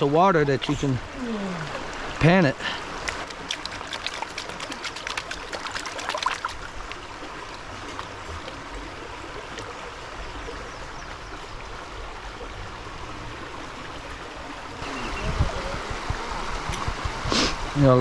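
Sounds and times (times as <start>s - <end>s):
creek rushing over boulders: 0.0s - 18.0s
splashes and clicks: 3.0s - 8.6s.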